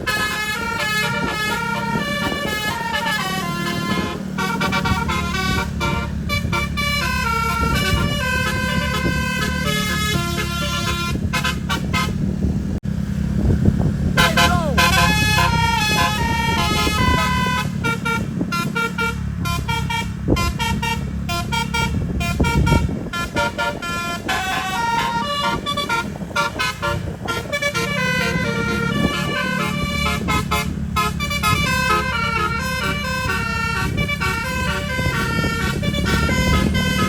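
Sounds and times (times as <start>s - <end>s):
musical bus horn melody: 0.0s - 12.8s, 14.0s - 37.0s
low engine drone: 0.0s - 37.0s.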